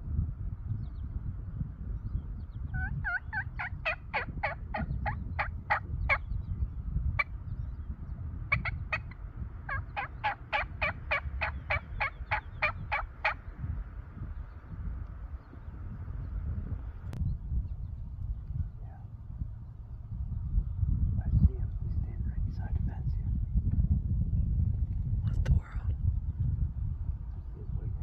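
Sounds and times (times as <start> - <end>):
turkey yelping: 2.8 - 6.2, 8.5 - 13.5
low rumble: 4.3 - 28.0.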